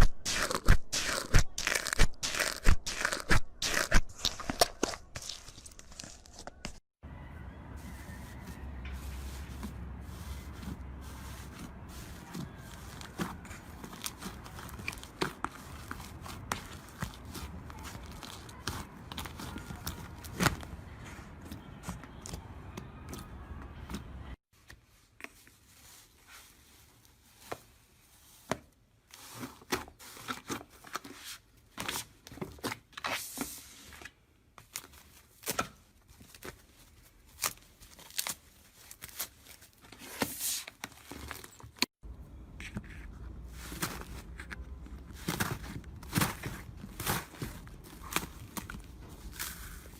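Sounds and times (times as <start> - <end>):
slime squeezed crackling and popping: 0.2 - 6.4.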